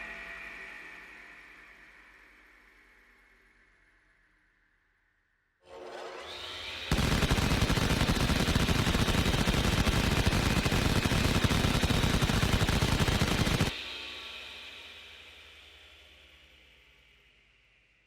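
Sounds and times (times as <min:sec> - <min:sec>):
spinning barrels whine: 0:06.9 - 0:13.7
rotary cannon firing burst: 0:06.9 - 0:13.8.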